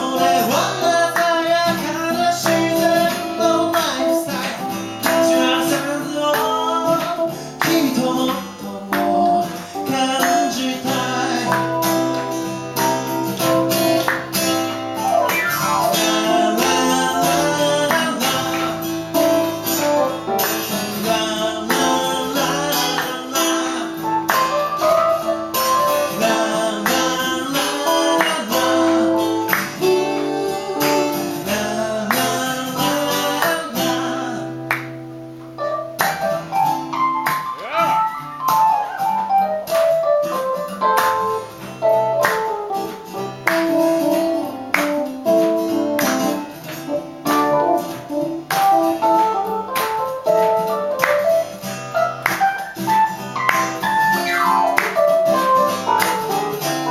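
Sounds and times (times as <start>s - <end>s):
person singing: 0.0s - 12.9s, 15.4s - 25.0s, 25.6s - 35.0s
acoustic guitar playing: 0.0s - 56.9s.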